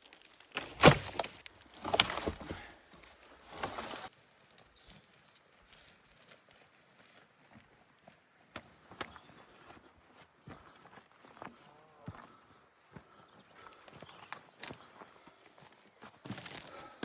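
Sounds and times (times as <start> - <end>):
rustling: 0.1 - 4.1.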